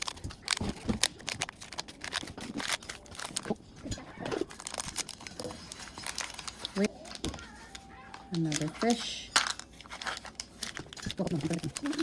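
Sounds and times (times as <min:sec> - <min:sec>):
packaging rustling: 0:00.0 - 0:12.0
plastic toy pieces clicking: 0:04.6 - 0:12.0.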